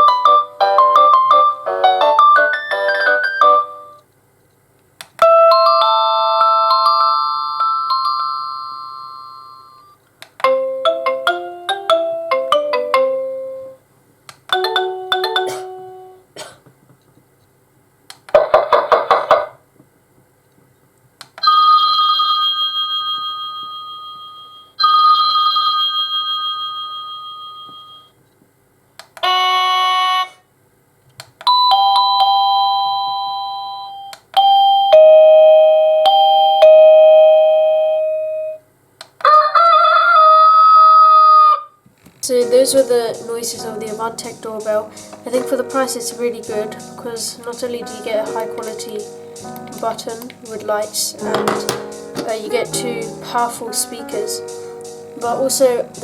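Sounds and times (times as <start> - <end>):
electronic doorbell chimes: 5.2 - 13.7, 21.4 - 28.2, 29.2 - 30.4, 31.5 - 38.6.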